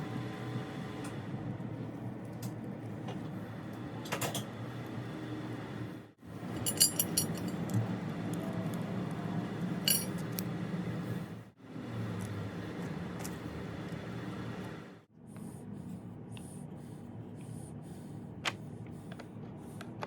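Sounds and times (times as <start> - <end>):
low background hum: 0.0 - 20.0
light metallic clinks: 6.6 - 7.8.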